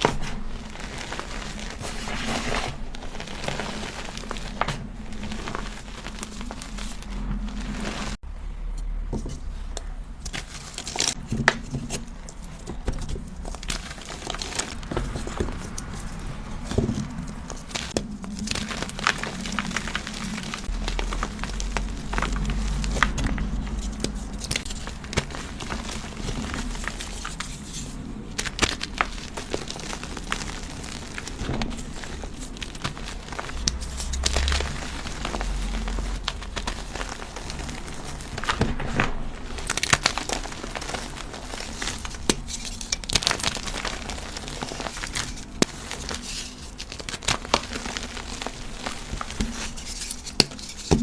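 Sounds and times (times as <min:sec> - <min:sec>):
chalk cubes being crushed: 0:10.2 - 0:51.0.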